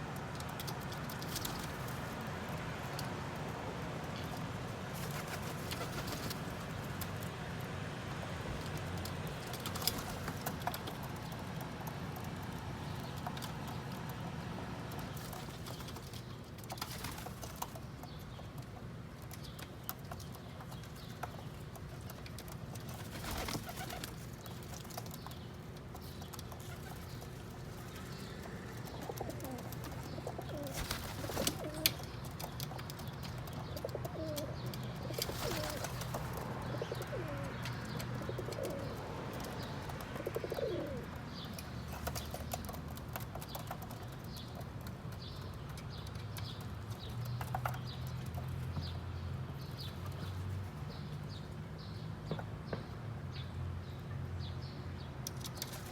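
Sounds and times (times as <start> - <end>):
pigeons cooing: 26.5 - 32.2, 33.6 - 41.4.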